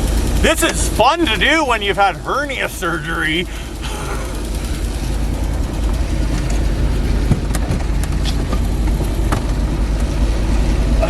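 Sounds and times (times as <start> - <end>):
van engine idling: 0.0 - 11.0
engine cover knocks and clicks: 3.5 - 9.8.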